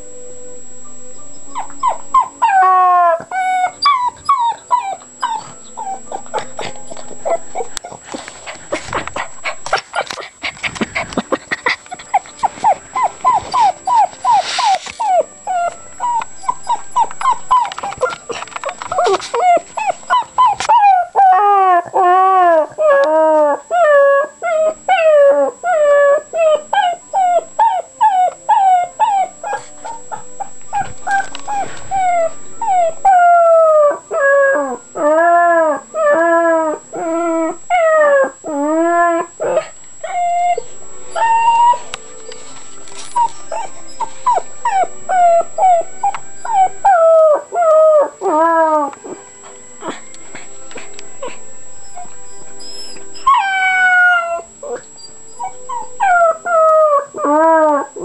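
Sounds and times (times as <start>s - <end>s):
puppy whimpering: 1.3s - 41.9s, 43.0s - 49.2s, 50.8s - 58.0s
scuffling clicks: 6.3s - 15.1s, 17.0s - 20.8s, 30.6s - 32.0s.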